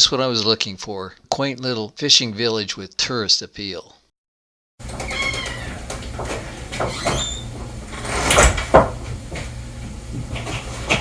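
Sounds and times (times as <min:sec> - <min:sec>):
door squeaks and clicks: 0:04.9 - 0:08.6.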